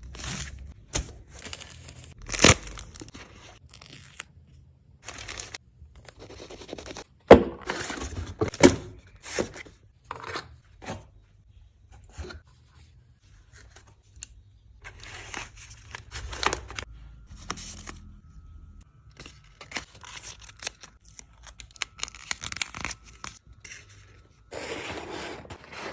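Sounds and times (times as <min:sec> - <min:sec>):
packaging being torn open: 0:01.7 - 0:04.3, 0:19.6 - 0:23.4.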